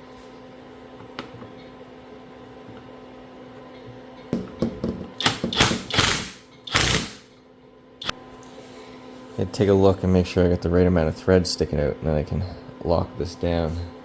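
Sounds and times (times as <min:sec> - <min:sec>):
socket ratchet clicking: 0:05.2 - 0:07.2.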